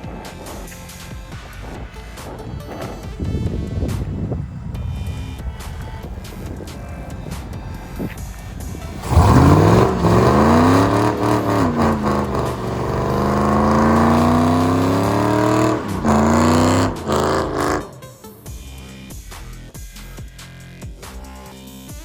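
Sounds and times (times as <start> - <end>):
car engine accelerating hard: 0.3 - 18.9.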